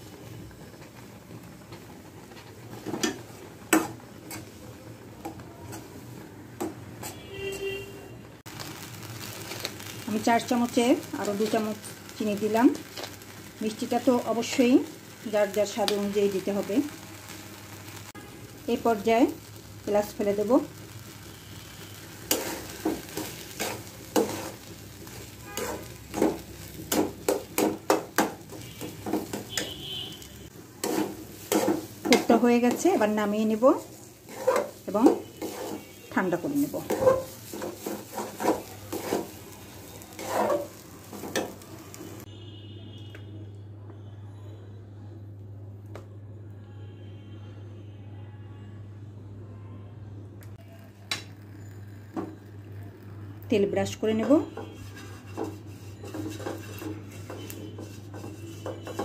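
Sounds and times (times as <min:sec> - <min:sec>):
spoon scraping in a pan: 0:02.3 - 0:07.9, 0:21.2 - 0:30.2, 0:30.8 - 0:42.0, 0:54.2 - 0:59.0.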